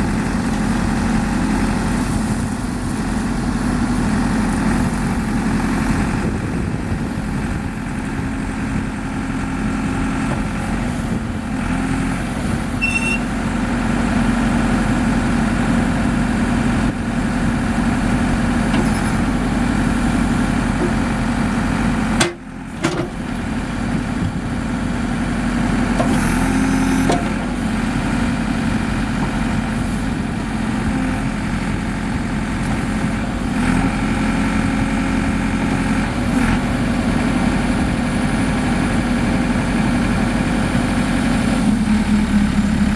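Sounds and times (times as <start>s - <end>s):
diesel engine idling: 0.0s - 42.9s.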